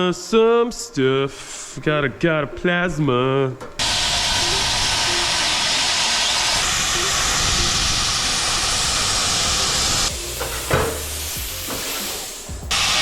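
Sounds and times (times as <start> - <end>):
plasma cutter hissing: 3.8 - 13.0
brief knock: 10.4 - 11.1.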